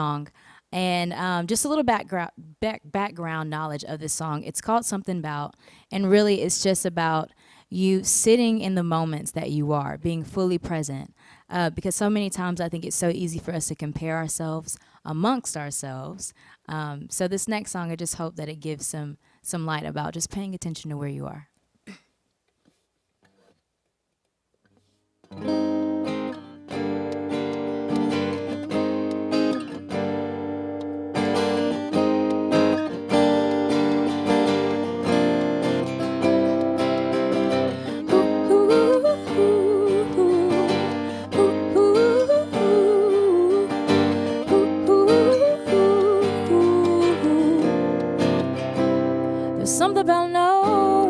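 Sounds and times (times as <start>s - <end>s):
woman's wordless vocals: 0.0s - 21.5s, 37.4s - 51.0s
acoustic guitar chords: 25.2s - 51.0s.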